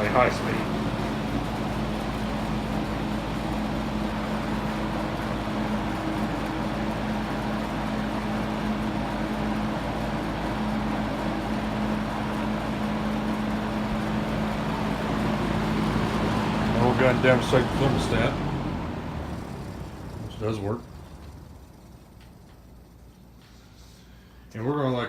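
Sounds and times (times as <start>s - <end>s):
box fan air rush: 0.0s - 24.6s
fan motor hum: 0.0s - 25.0s.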